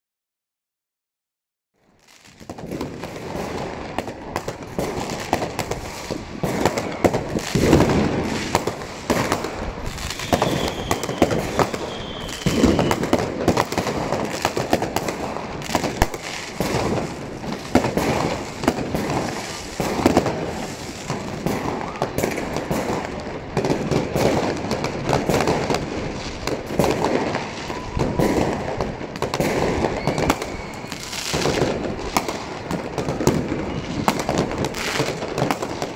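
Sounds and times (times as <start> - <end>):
fireworks bangs and crackles: 1.8 - 35.9
faint firework whistles: 5.1 - 22.9, 26.8 - 35.9.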